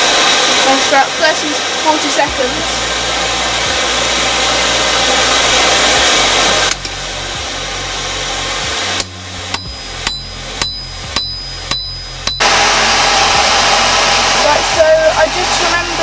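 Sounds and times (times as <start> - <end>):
forge blower rushing: 0.0 - 16.0
hammer striking steel on anvil: 9.0 - 12.5.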